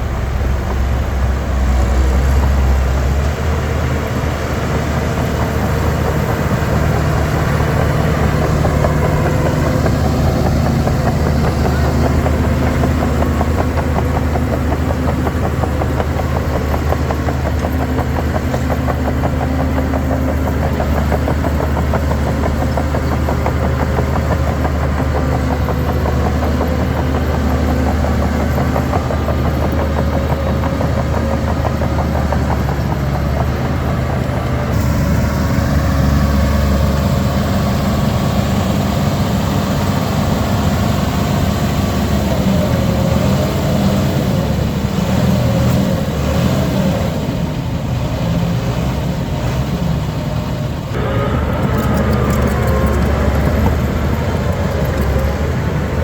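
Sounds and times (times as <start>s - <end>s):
heavy diesel engine running: 0.0s - 56.0s.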